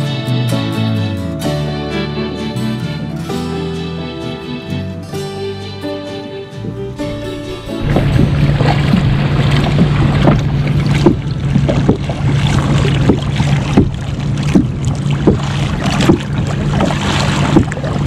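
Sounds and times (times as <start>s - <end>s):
low hum: 6.7s - 18.0s
water splashing against kayak: 6.7s - 18.0s
wind on microphone: 7.0s - 18.0s.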